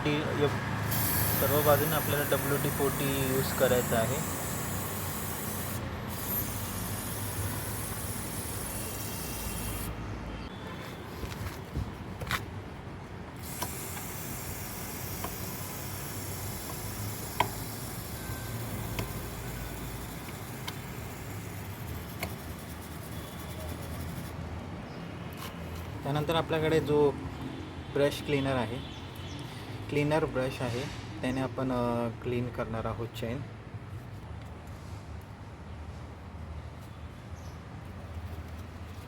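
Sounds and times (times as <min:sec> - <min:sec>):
aerosol spray hissing: 0:00.8 - 0:10.0, 0:13.4 - 0:24.3
sharp clicks: 0:13.4 - 0:14.1.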